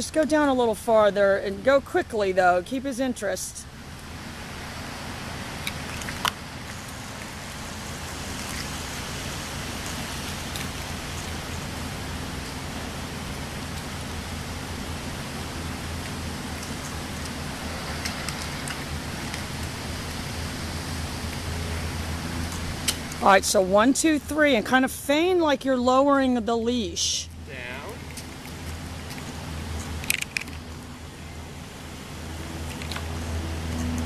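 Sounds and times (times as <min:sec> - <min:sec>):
low steady hum: 0:00.0 - 0:34.0.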